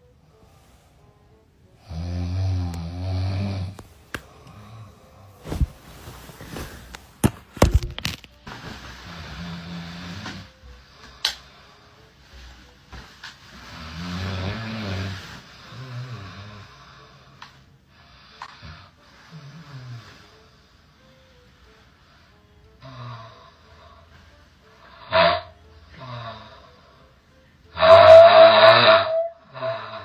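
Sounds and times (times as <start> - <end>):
person snoring: 1.8 - 5.5, 9.0 - 10.6, 13.6 - 17.4, 18.0 - 20.6, 22.8 - 24.1, 24.8 - 27.0, 27.8 - 30.0.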